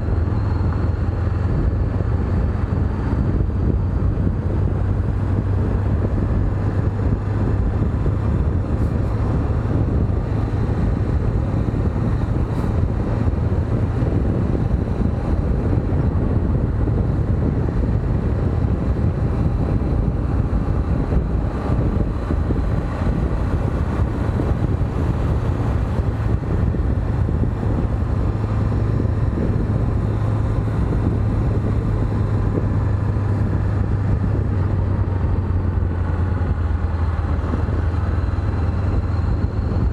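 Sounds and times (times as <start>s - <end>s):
wind rushing over microphone: 0.0s - 39.9s.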